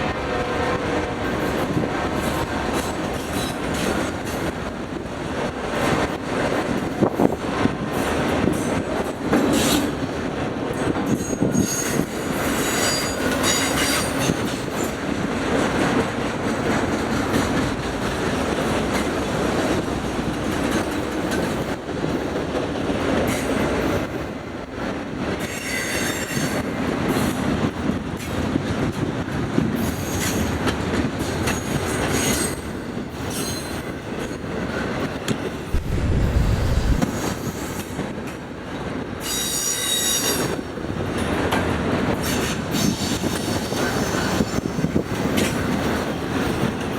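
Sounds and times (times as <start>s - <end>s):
low rumble: 35.7s - 37.4s.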